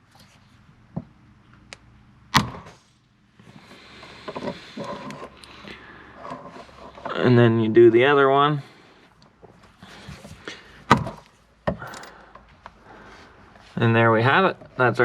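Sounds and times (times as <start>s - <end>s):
metal chain clinking: 11.8s - 12.3s.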